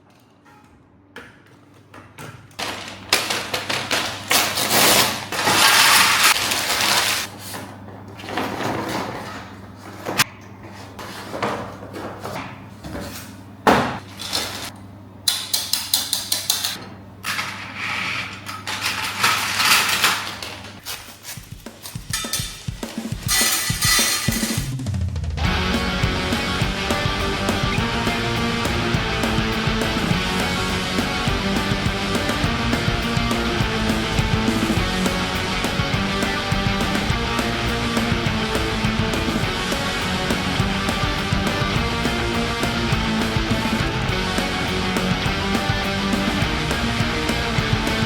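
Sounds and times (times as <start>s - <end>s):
packaging rustling and crinkling: 2.6s - 7.5s.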